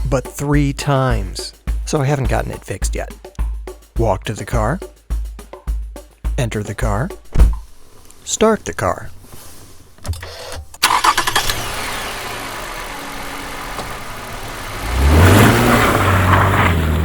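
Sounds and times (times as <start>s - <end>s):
car engine running: 7.6s - 17.0s
starter motor cranking: 9.8s - 15.3s.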